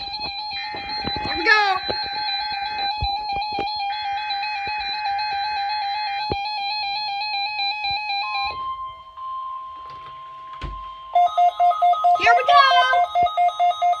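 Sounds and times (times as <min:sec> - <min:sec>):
pulsing electronic alert tones: 0:00.0 - 0:09.1
steady single-pitched alarm tone: 0:00.0 - 0:14.0.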